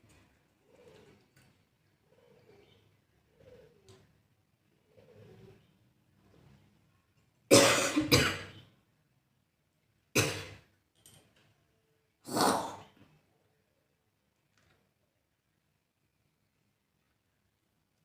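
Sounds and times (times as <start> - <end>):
person coughing: 7.5 - 8.6, 10.2 - 10.6.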